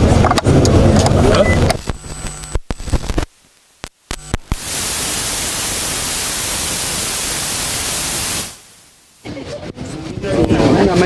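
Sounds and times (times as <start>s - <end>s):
white noise static hiss: 0.0s - 9.8s
sharp clicks: 1.0s - 4.7s.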